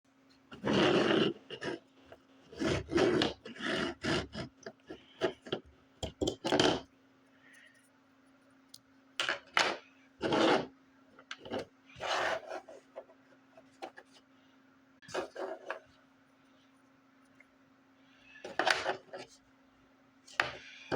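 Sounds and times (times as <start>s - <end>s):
faint steady hum: 0.1s - 20.9s
scraping and rubbing: 0.5s - 5.6s, 9.7s - 10.7s, 11.4s - 14.3s, 15.0s - 16.0s.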